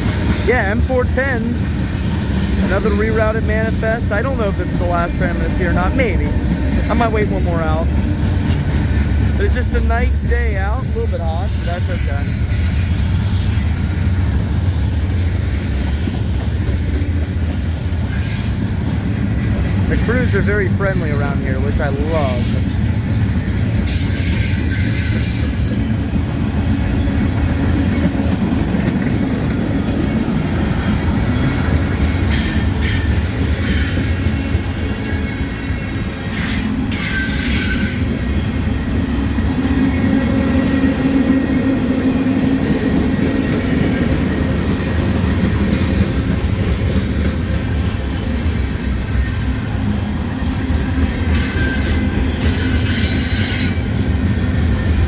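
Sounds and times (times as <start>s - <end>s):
steel wheels rumbling on rail: 0.0s - 55.0s
high-pitched wheel squeals: 50.5s - 54.0s.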